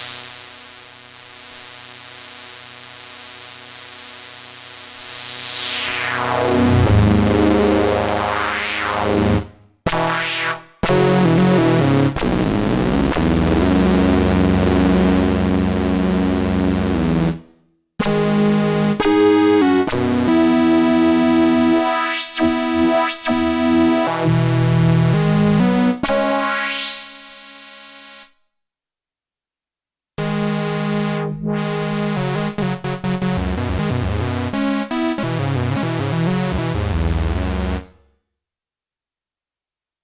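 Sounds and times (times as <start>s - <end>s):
buzzy synthesizer notes: 5.1s - 17.4s, 18.0s - 27.1s, 30.2s - 37.9s.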